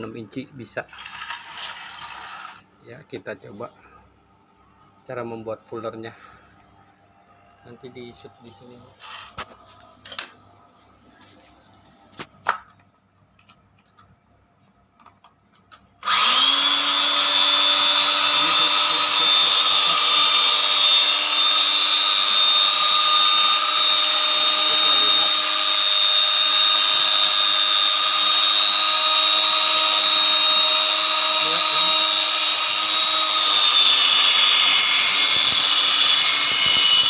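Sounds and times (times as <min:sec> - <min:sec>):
belt grinder whining: 0:00.9 - 0:02.6, 0:16.0 - 0:37.0.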